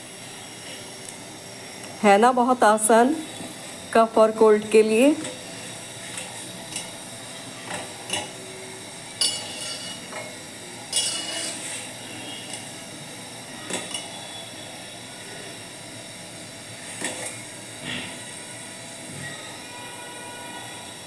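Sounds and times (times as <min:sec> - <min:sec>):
metal utensils clinking: 0:09.2 - 0:11.9.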